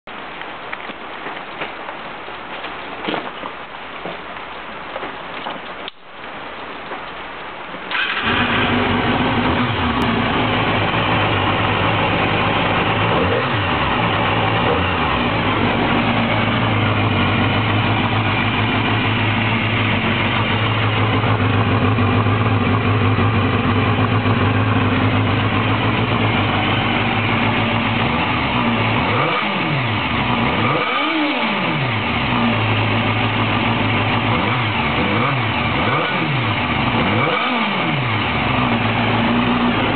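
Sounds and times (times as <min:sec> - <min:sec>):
motorcycle engine idling: 0:07.9 - 0:30.8, 0:31.6 - 0:39.9.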